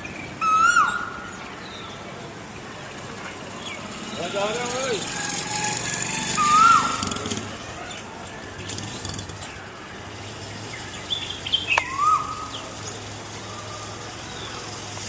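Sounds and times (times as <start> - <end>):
koel whistled calls: 0.4 - 1.4, 5.3 - 7.2, 11.1 - 12.6.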